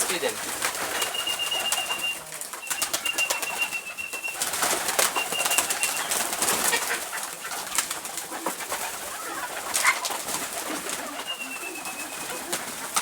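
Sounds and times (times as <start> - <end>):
pigeons cooing: 0.0 - 13.0
pigeons pecking and scuffling: 0.0 - 13.0
wings flapping: 0.0 - 13.0
high steady whistle: 0.9 - 6.1.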